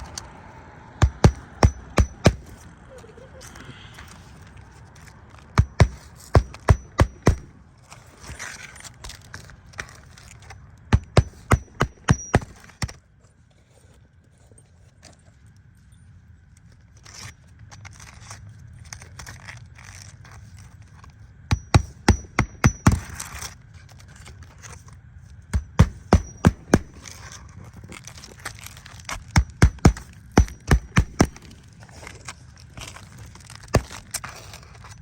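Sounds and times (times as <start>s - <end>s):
hammering blows: 1.0s - 2.7s, 5.6s - 7.6s, 10.9s - 12.9s, 21.5s - 23.3s, 25.5s - 27.2s, 29.3s - 31.6s.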